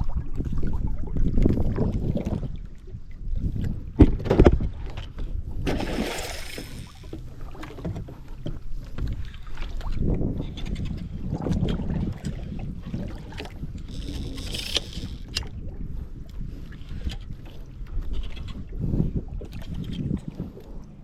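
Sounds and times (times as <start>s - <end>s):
wind rumble on microphone: 0.0s - 21.0s
water slapping against boat hull: 5.6s - 15.6s.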